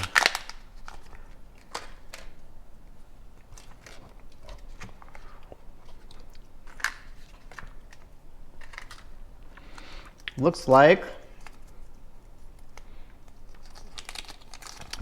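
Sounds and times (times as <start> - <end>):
plastic capsule clicks and crackles: 0.0 - 2.4, 6.0 - 10.4, 12.6 - 15.0.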